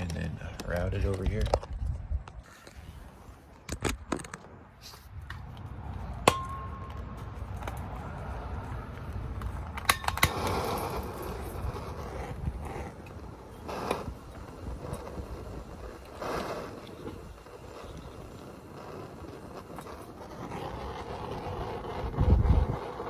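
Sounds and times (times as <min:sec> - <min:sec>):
sharp ringing metallic tap: 0:06.3 - 0:07.0.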